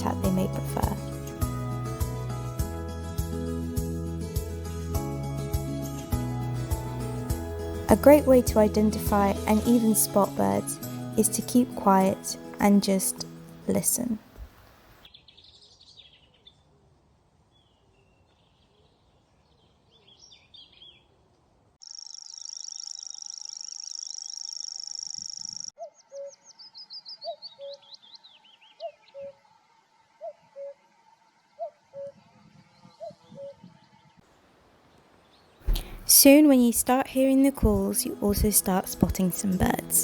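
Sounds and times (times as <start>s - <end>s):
small birds calling and singing: 15.1s - 16.6s, 17.6s - 21.1s, 21.9s - 29.3s.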